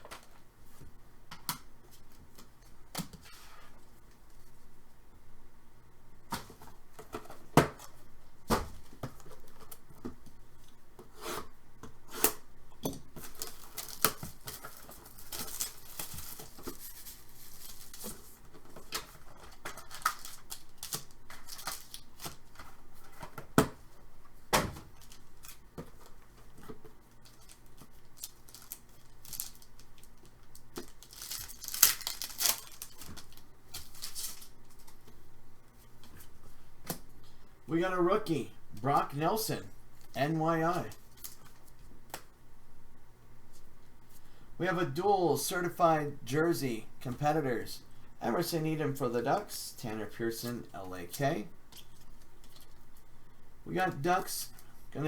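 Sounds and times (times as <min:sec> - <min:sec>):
card packaging tearing and crinkling: 0:13.2 - 0:23.3, 0:27.2 - 0:35.0.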